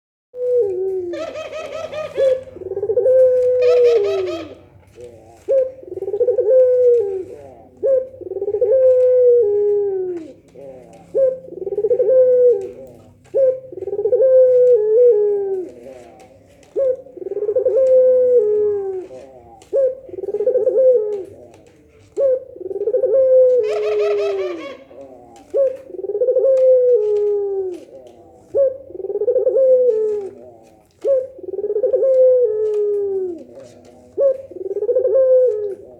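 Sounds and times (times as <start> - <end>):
doves cooing: 0.4 - 35.9
harsh bird calls: 1.1 - 6.1.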